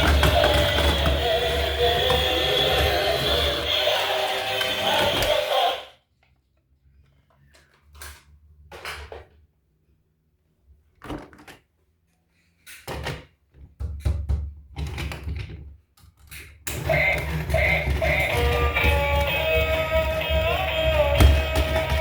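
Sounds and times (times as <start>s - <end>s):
knocks of objects handled: 17.6s - 22.0s.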